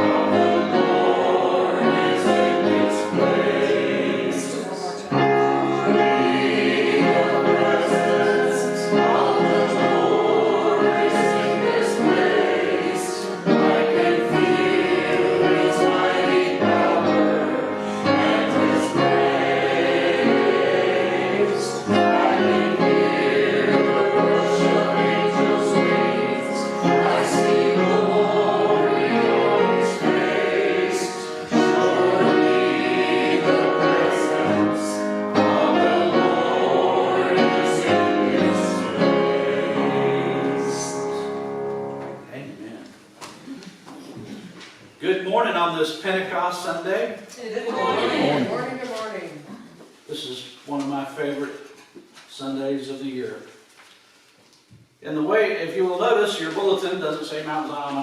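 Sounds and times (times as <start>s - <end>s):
group singing a hymn: 0.0s - 42.3s, 47.6s - 49.4s.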